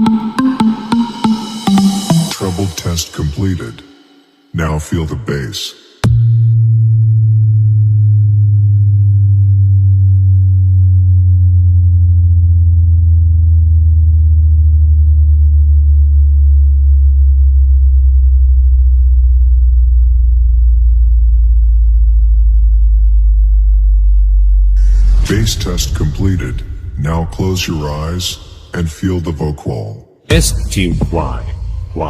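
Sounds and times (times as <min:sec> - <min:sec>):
low bass sine tone sliding down: 0:06.2 - 0:28.8.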